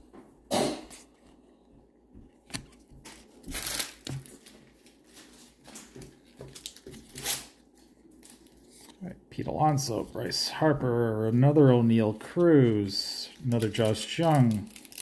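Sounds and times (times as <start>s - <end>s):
cards rustling and flicking: 2.4s - 7.6s, 12.3s - 15.0s
wrapper crinkling: 3.0s - 9.0s, 12.3s - 15.0s.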